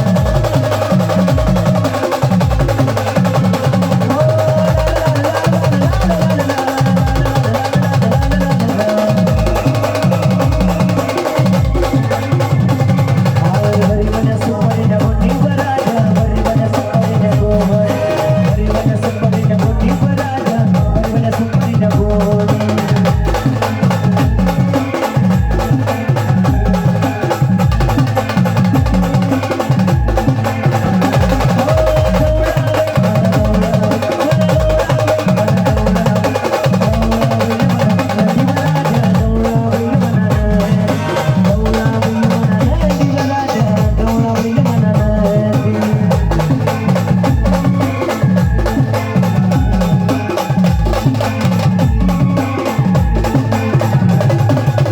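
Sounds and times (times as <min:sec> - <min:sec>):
fast drum beat: 0:00.0 - 0:54.9.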